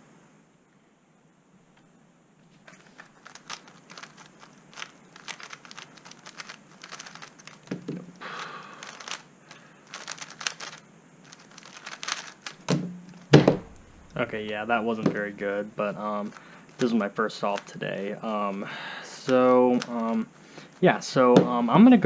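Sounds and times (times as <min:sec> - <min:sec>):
speedcube plastic clicks: 0:02.6 - 0:12.8, 0:16.2 - 0:18.5.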